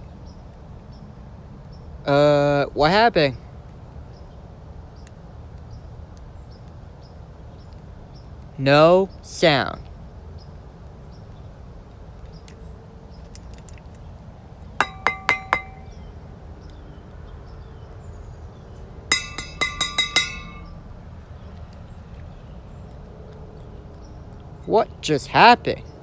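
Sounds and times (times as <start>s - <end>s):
hard ringing clinks: 14.8s - 15.9s, 19.1s - 20.7s.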